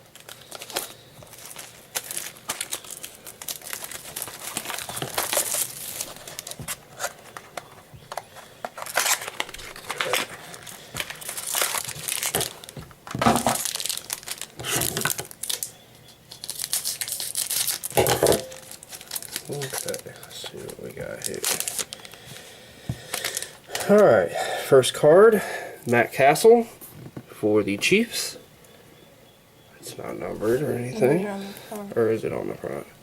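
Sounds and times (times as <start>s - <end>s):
plastic wrapping tearing and crinkling: 0.0s - 24.0s.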